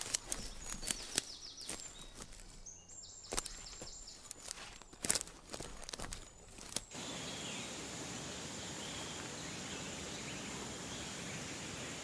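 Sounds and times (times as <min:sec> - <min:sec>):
sharp clicks and crunches: 0:00.0 - 0:02.5, 0:03.3 - 0:06.9.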